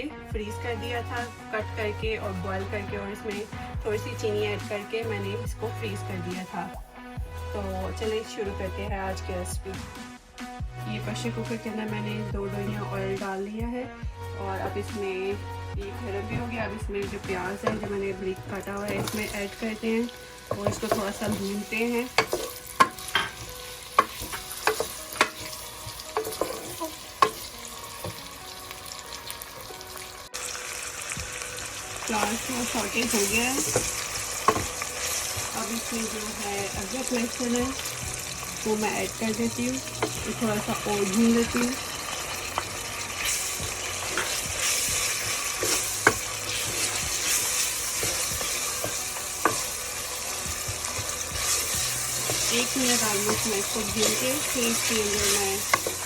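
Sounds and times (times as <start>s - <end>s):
onions sizzling in oil: 14.6s - 56.0s
utensil knocking against pot: 22.1s - 25.5s.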